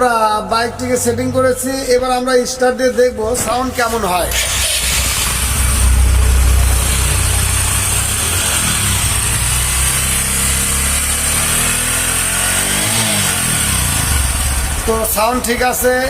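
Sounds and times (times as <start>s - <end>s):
motorcycle engine idling: 4.3s - 16.0s.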